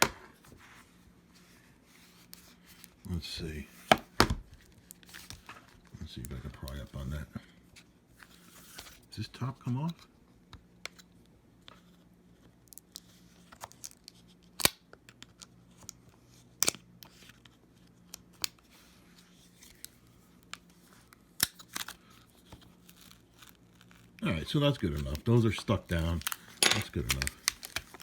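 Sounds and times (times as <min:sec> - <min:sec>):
sharp plastic snaps: 0:14.6 - 0:15.0.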